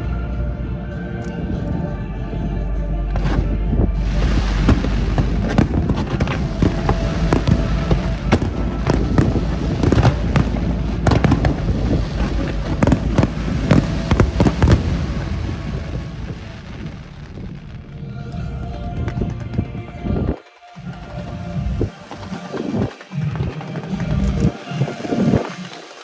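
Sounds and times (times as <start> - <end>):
fireworks bangs and crackle: 4.2 - 17.8.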